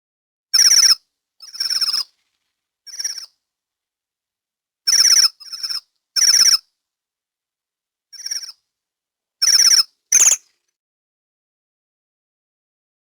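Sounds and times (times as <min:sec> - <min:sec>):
bird trilled calls: 0:00.6 - 0:02.0, 0:02.9 - 0:03.3, 0:08.2 - 0:08.6, 0:09.4 - 0:10.4.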